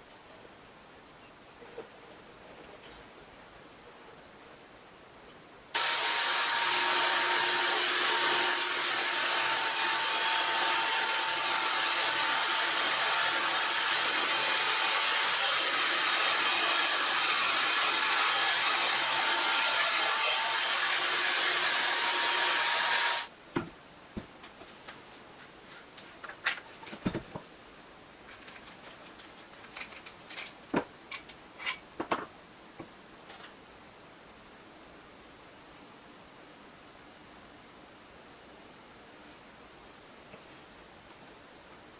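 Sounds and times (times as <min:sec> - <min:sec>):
power tool motor whine: 0:05.8 - 0:23.3.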